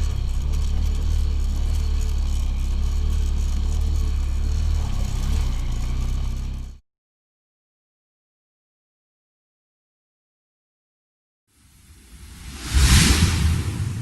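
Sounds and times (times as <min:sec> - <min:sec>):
motorcycle engine rumbling: 0:00.0 - 0:06.8.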